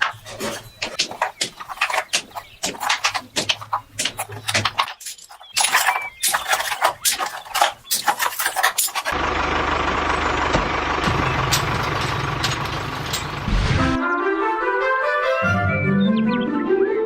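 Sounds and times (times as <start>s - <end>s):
scraping and knocking: 0.0s - 9.2s
engine starting and idling: 5.6s - 14.0s.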